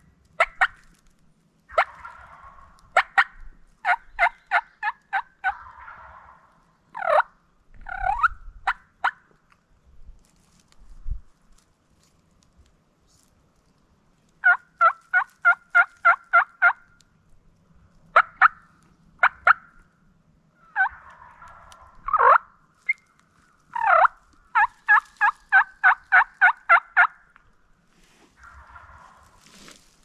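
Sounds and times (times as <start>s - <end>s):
turkey yelping: 0.4s - 0.8s, 1.7s - 9.3s, 14.4s - 17.0s, 18.1s - 19.8s, 20.6s - 27.3s, 28.4s - 29.9s.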